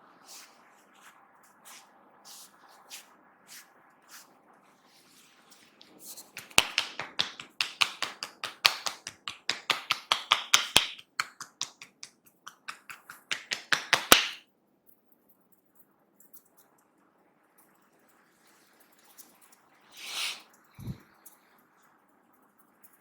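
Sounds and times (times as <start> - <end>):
hands tapping on head: 6.3 - 14.4.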